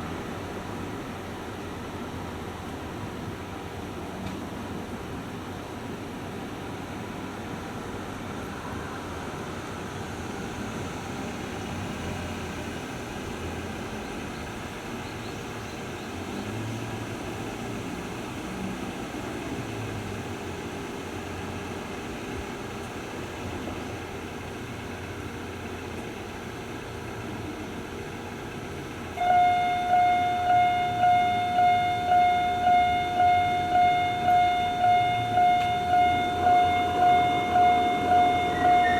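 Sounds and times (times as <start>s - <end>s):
street traffic noise: 0.0s - 38.9s
vehicles passing: 30.0s - 38.9s.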